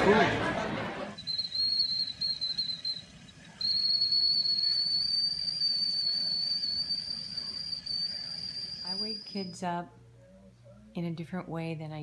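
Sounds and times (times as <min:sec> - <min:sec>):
high steady whistle tone: 0:01.2 - 0:09.9.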